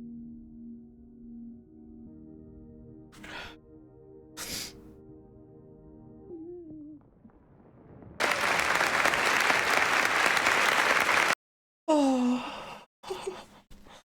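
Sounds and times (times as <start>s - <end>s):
applause: 8.2s - 11.4s.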